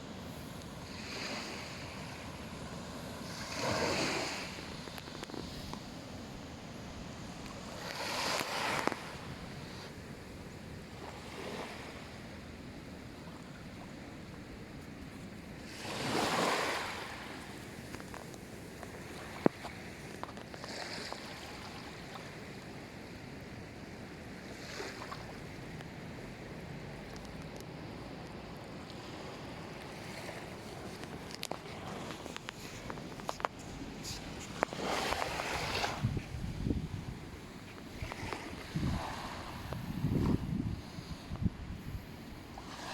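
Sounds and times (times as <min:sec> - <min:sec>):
hiss of surf: 0:00.0 - 0:13.1, 0:15.1 - 0:20.1, 0:27.8 - 0:42.9
small waves breaking on beach: 0:00.0 - 0:26.7, 0:28.1 - 0:42.9.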